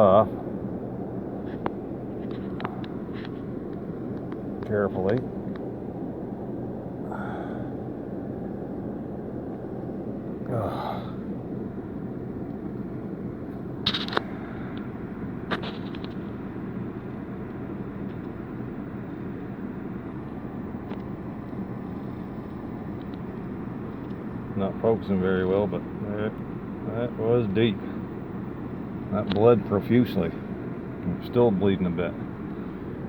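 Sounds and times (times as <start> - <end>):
vehicle interior hum: 0.0 - 33.0
soft breathy exhales: 7.0 - 7.8, 10.5 - 11.3
sharp clicks: 13.8 - 14.9.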